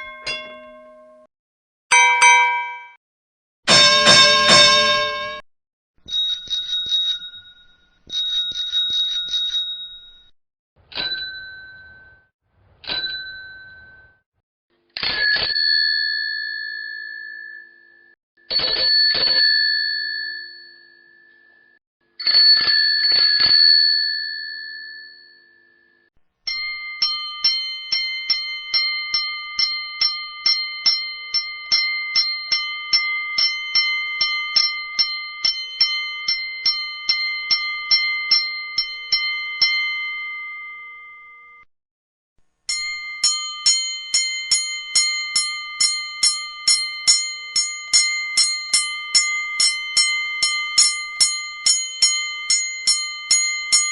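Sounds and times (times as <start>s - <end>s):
bicycle bell ringing: 1.9s - 3.0s, 3.7s - 5.4s, 26.5s - 41.6s, 42.7s - 53.9s
brighter crossing bell: 1.9s - 3.0s, 3.7s - 5.4s, 42.7s - 53.9s
level-crossing signal bell: 1.9s - 3.0s, 3.7s - 5.4s, 26.5s - 41.6s, 42.7s - 53.9s.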